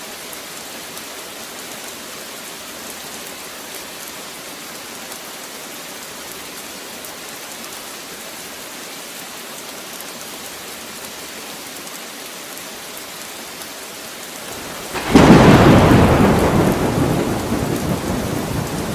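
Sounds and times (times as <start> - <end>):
steady rain falling: 0.0 - 18.9
thunder clap rumbling: 14.5 - 18.9.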